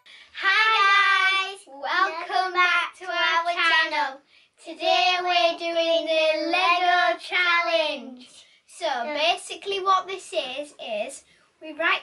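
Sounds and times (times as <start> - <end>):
child singing: 0.0 - 8.2.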